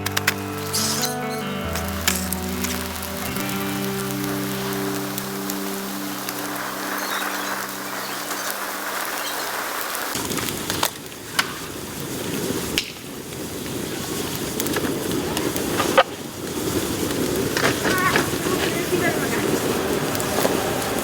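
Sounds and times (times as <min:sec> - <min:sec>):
music: 0:00.0 - 0:09.2
sharp pops and cracks of fire: 0:00.0 - 0:21.0
fire burning with low rush: 0:01.8 - 0:21.0.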